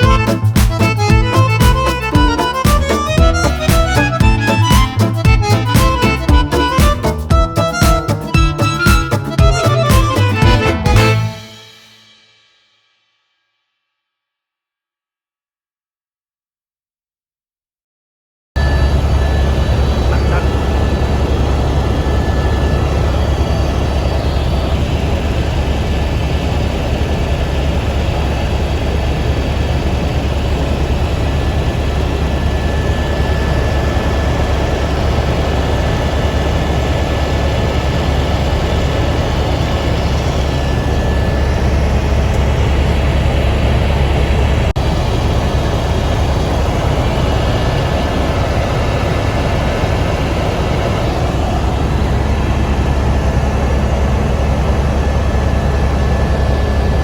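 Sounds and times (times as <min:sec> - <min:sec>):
helicopter engine and rotor drone: 0:00.0 - 0:11.8, 0:18.6 - 0:57.0.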